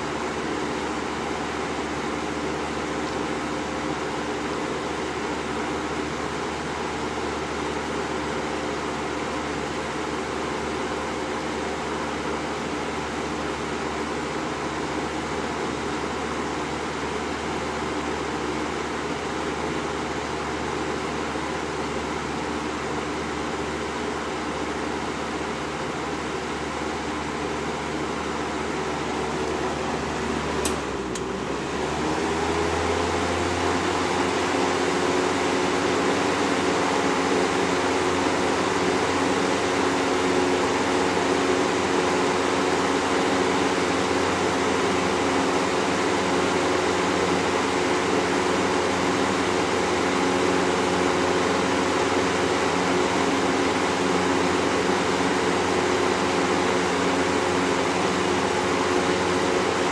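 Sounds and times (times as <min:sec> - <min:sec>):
fan motor hum: 0:00.0 - 0:59.9
fan switch click: 0:30.6 - 0:31.4.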